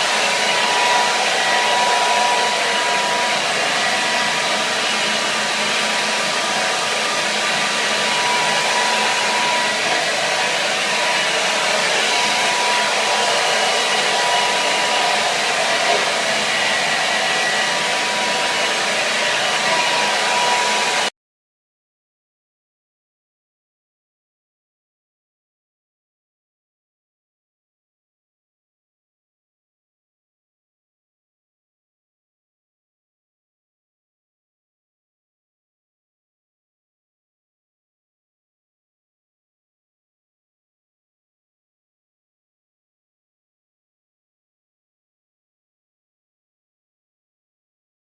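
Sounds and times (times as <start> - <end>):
hair dryer running: 0.0 - 21.1.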